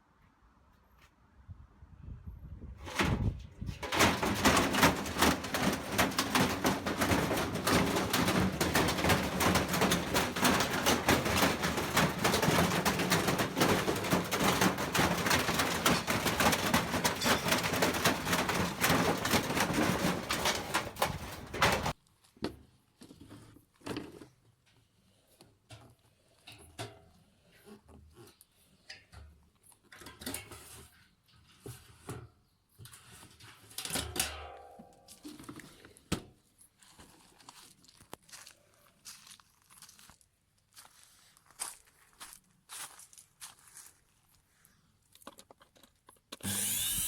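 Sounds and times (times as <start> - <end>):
washing machine rattling: 2.8 - 22.0.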